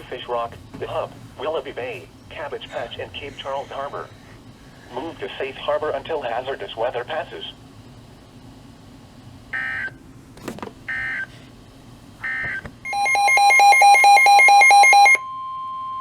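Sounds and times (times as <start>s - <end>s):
steady warning tone: 0.0s - 7.6s, 12.2s - 16.0s
electronic alarm beeps: 10.9s - 11.3s, 12.2s - 16.0s.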